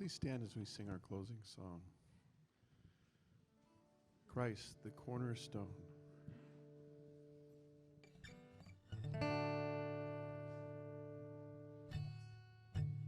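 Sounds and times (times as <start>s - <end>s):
acoustic guitar strumming: 4.4s - 13.0s.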